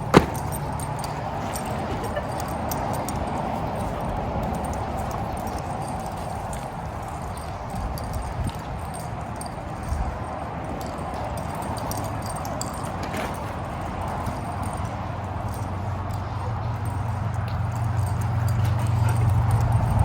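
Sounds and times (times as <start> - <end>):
dog claws clicking on hard floor: 0.0 - 2.5.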